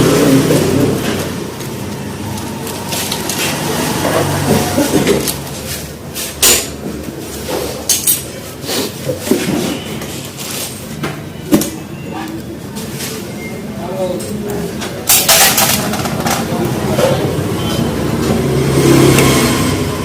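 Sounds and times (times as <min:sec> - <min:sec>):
metal tools clinking: 0:07.9 - 0:08.4.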